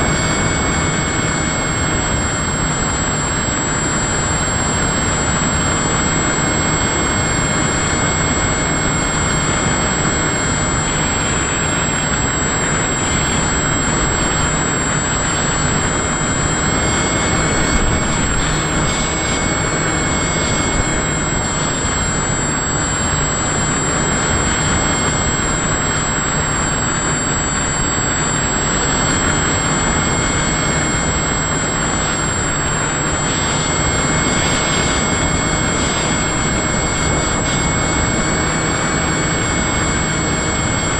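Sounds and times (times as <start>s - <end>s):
motor and propeller whine: 0.0s - 40.9s
wind rush: 0.0s - 40.9s.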